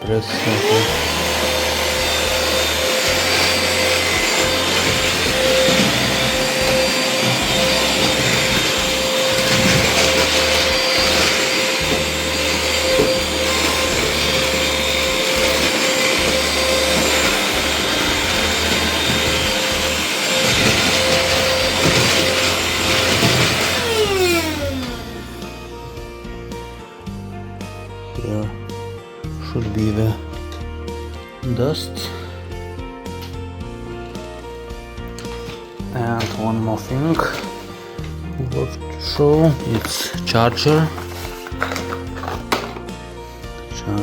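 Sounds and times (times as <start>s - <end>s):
stick vacuum cleaner motor whine: 0.0s - 26.4s, 39.1s - 43.7s.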